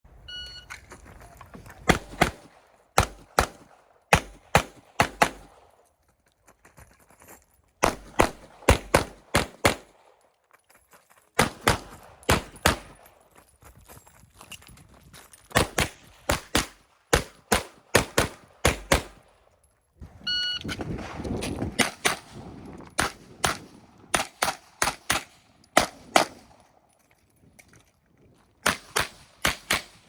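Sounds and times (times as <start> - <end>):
pistol shots: 1.9 - 5.8, 7.8 - 10.2, 11.4 - 13.1, 15.6 - 19.3, 21.0 - 22.4, 23.0 - 26.6, 28.6 - 30.0.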